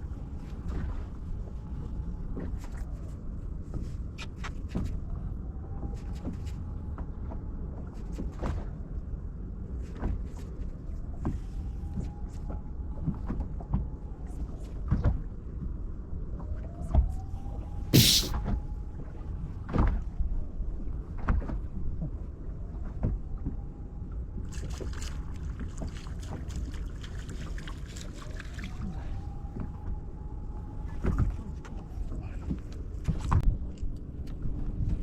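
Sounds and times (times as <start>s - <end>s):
sharp crack: 18.0s - 18.3s
wind rumbling on microphone: 28.0s - 35.0s.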